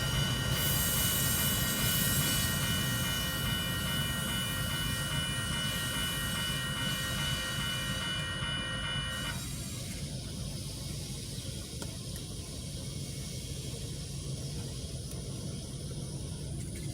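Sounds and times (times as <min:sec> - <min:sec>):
train rumbling past: 0:00.0 - 0:11.3.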